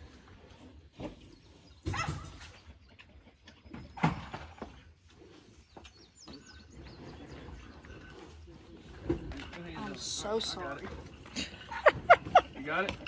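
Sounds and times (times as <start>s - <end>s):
birds chirping: 1.0s - 13.0s.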